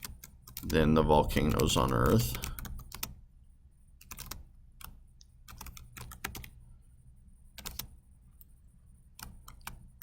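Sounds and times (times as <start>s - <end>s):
computer keyboard typing: 0.0s - 3.2s, 4.0s - 6.6s, 7.5s - 8.5s, 9.1s - 10.0s
faint low hum: 0.0s - 10.0s.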